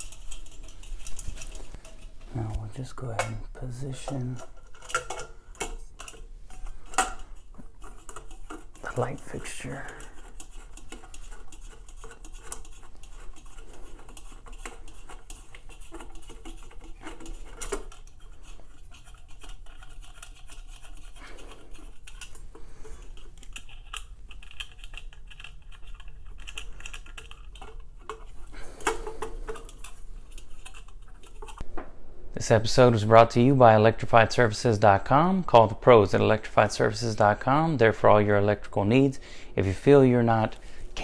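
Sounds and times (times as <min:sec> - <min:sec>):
parts clinking and scraping: 0:00.0 - 0:31.6.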